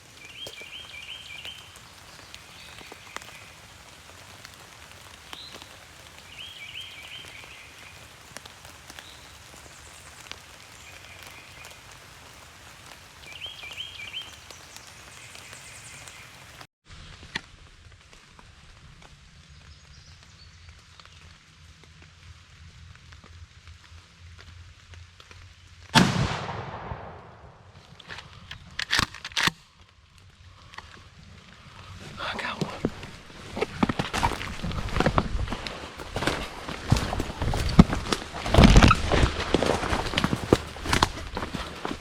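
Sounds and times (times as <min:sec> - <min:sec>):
steady rain falling: 0:00.0 - 0:42.0
raindrop taps: 0:31.8 - 0:42.0.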